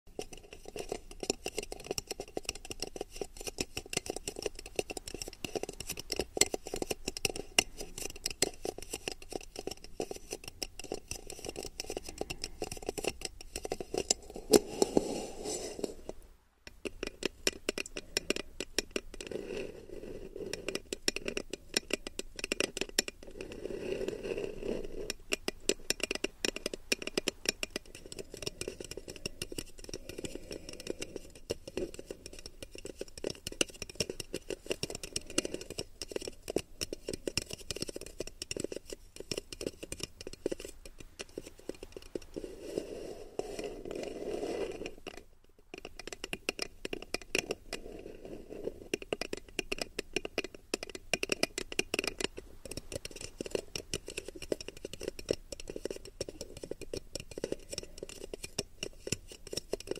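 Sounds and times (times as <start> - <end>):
fingertips tapping on microphone: 0.1 - 19.4, 20.0 - 47.9, 48.6 - 59.9
soft low rubbing: 4.4 - 16.4, 23.2 - 26.8, 38.8 - 45.3, 47.6 - 48.9.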